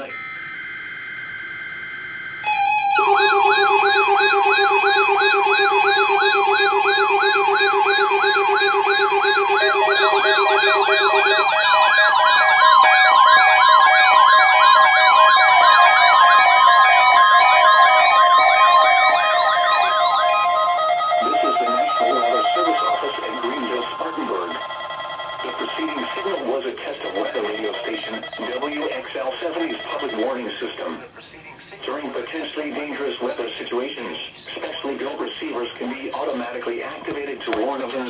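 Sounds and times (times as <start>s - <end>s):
paired data tones: 0.0s - 26.5s, 27.1s - 30.4s
steady beeps: 0.0s - 26.5s, 27.1s - 30.4s
warbling siren-like tones: 0.0s - 26.5s, 27.1s - 29.0s, 29.6s - 30.3s.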